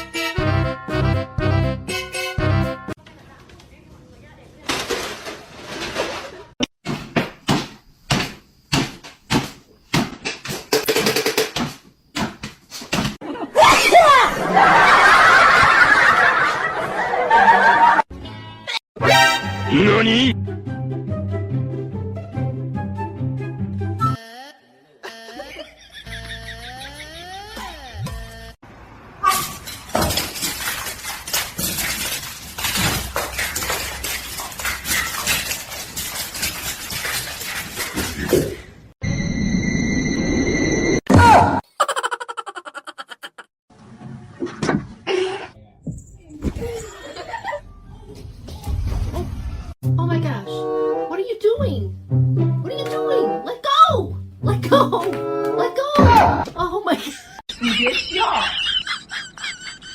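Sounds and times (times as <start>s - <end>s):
knocks and thumps: 6.8s - 13.2s.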